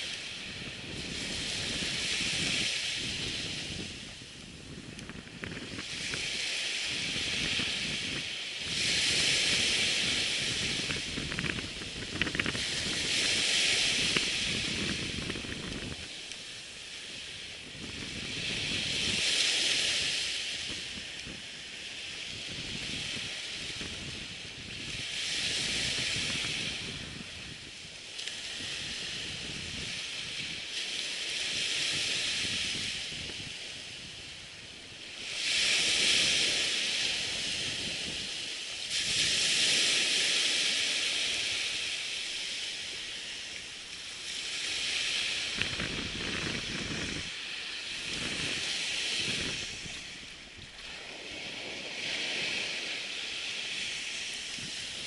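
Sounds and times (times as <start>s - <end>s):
surf washing up a beach: 0.0s - 55.0s
wind rumbling on microphone: 0.0s - 55.0s.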